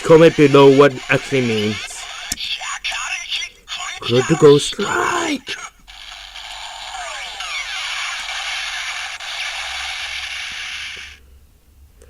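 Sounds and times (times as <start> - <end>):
toy voice call: 0.0 - 11.2
toy electronic whooshing effect: 5.9 - 11.2.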